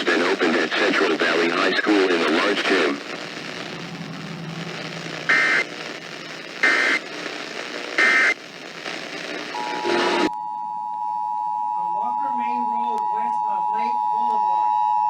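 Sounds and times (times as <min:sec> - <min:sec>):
radio hiss: 0:00.0 - 0:10.3
buzzing digital bursts: 0:02.8 - 0:10.3.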